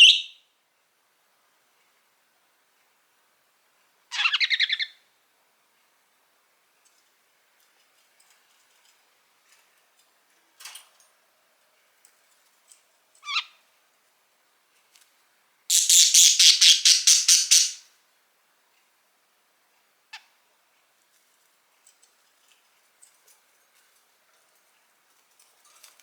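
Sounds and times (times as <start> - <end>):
budgerigar chirping: 0.0 - 0.4, 4.1 - 5.0, 13.2 - 13.6, 15.7 - 17.8
rapid harsh chirps: 15.7 - 17.8.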